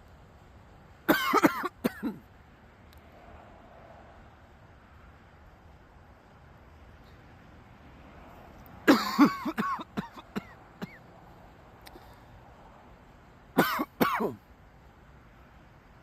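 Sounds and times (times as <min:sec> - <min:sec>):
man coughing: 0:01.1 - 0:02.2, 0:08.9 - 0:11.0, 0:13.6 - 0:14.4.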